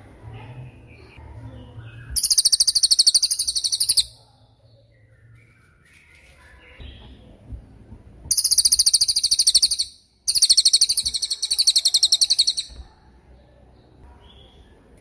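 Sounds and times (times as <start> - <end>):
bird singing high trills: 1.8 - 4.2, 8.3 - 12.8.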